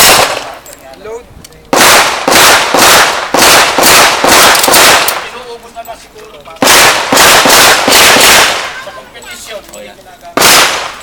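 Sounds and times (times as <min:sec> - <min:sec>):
gunshots with echo: 0:00.0 - 0:00.6, 0:01.7 - 0:05.3, 0:06.6 - 0:08.8, 0:10.4 - 0:11.0.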